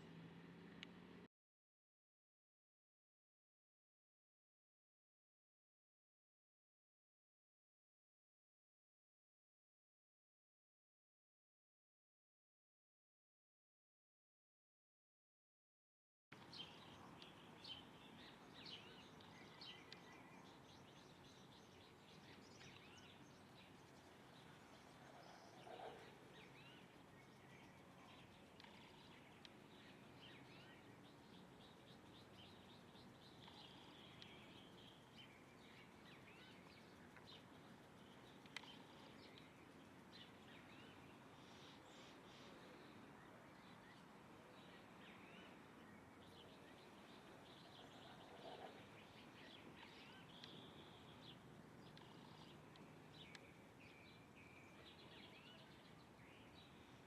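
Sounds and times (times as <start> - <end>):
small birds chirping: 16.4 - 57.0.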